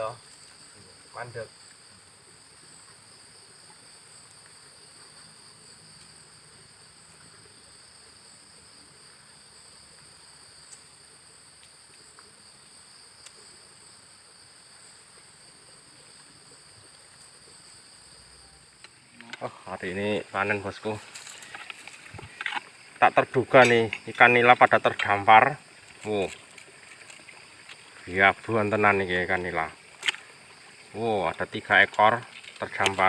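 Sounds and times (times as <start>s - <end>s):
insect chorus buzzing: 0.0s - 33.0s
faint ticks: 13.2s - 13.4s.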